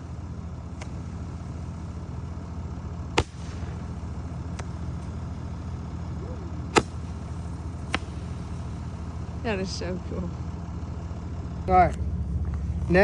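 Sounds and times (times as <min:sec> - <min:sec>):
steady low rumble: 0:00.0 - 0:13.0
firework bang: 0:03.1 - 0:04.0.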